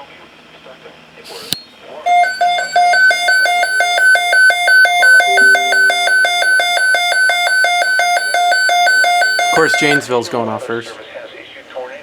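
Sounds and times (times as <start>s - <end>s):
faint steady lower tone: 2.1s - 10.0s
alternating electronic alarm beeps: 2.1s - 10.1s.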